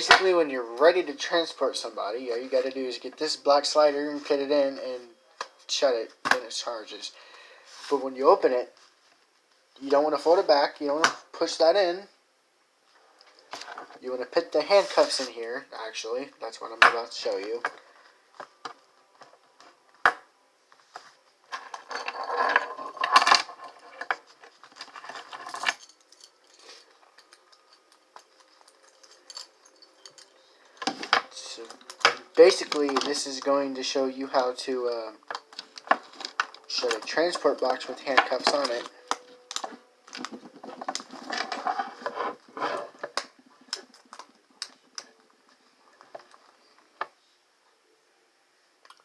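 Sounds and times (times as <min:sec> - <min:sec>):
handcuffs clinking and jangling: 0:24.8 - 0:30.9.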